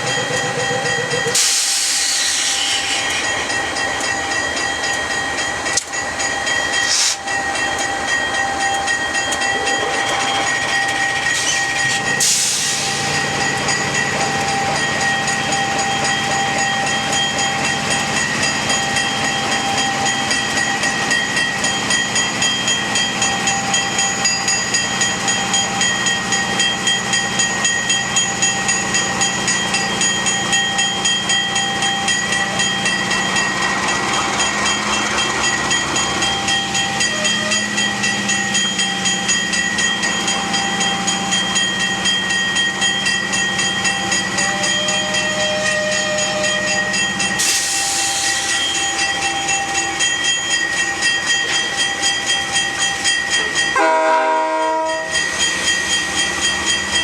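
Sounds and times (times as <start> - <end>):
hiss: 1.4 - 3.3, 12.2 - 13.2, 47.4 - 48.7.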